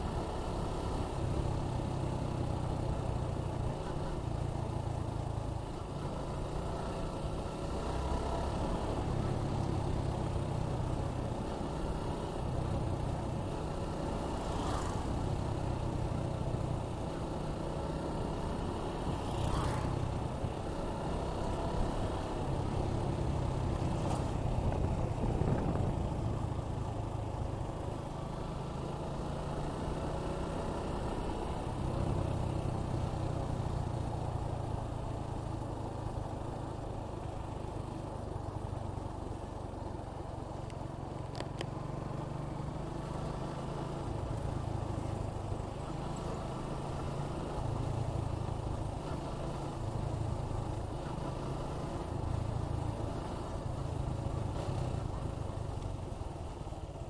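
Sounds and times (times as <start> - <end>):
motorcycle engine running: 0.0 - 57.0
wind rushing over microphone: 23.8 - 26.3.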